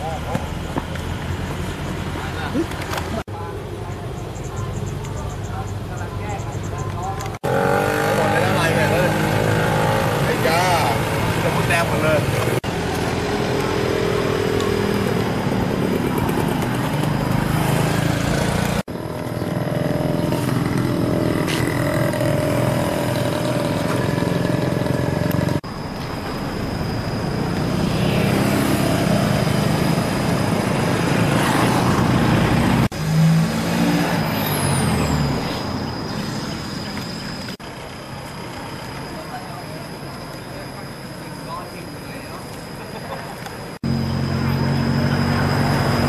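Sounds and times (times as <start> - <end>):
road traffic engines: 0.0 - 46.0
vehicle passing: 7.4 - 18.9, 19.5 - 37.5.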